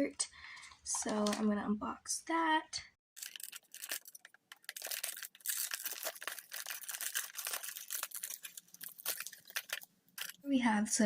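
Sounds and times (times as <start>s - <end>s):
packaging crinkling and tearing: 3.2s - 10.4s.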